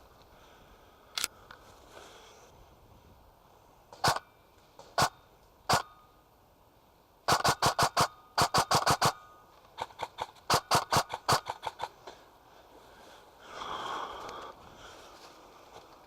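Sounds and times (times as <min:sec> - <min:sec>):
airsoft guns firing: 0:04.0 - 0:04.2, 0:04.9 - 0:05.9, 0:07.3 - 0:12.0.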